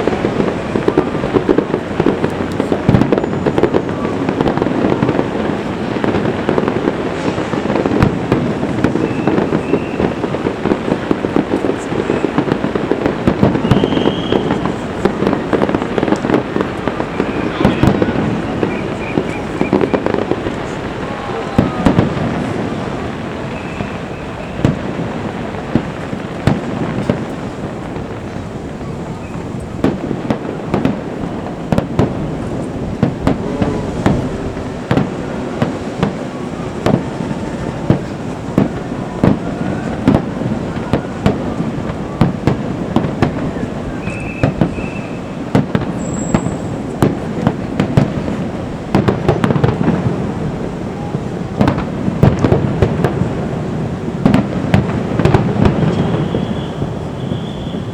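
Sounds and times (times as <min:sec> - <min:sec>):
continuous rumble: 0:00.0 - 0:13.6, 0:14.4 - 0:44.0
fireworks bursting bangs: 0:00.0 - 0:57.9.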